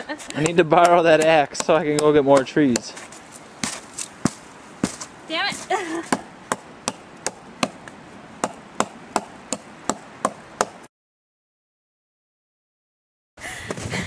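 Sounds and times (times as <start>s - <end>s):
axe chopping into a log: 0.4s - 3.0s, 3.6s - 5.0s, 6.0s - 7.8s, 8.4s - 10.8s.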